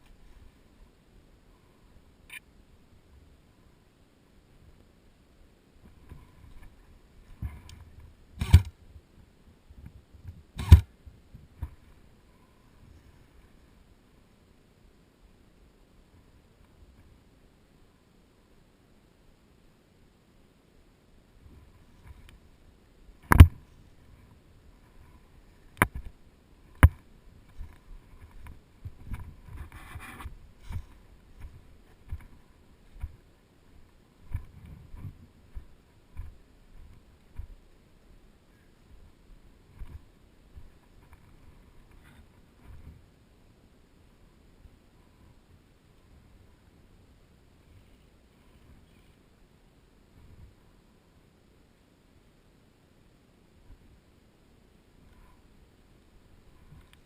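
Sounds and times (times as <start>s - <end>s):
rustling: 21.4s - 43.1s
faint clicks: 56.6s - 57.0s.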